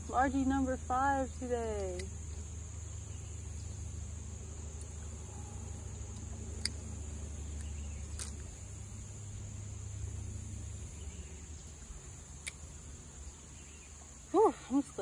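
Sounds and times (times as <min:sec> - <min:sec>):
crickets droning: 0:00.0 - 0:15.0
low rumble: 0:04.3 - 0:11.2.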